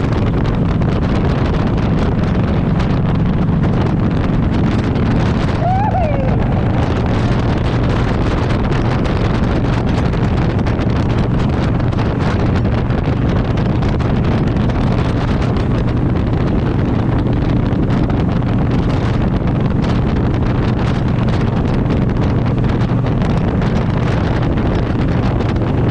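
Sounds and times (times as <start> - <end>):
vehicle low drone: 0.0 - 25.9
wind on microphone: 0.0 - 25.9
person talking: 5.6 - 7.4.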